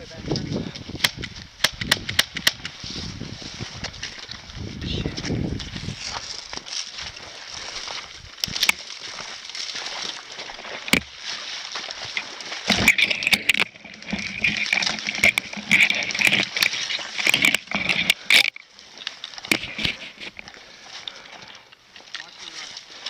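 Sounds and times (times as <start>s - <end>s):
rustling and crunching through brush: 0.0s - 23.0s
sharp clicks: 1.0s - 2.8s, 8.4s - 8.8s, 10.9s - 11.1s, 12.7s - 18.6s.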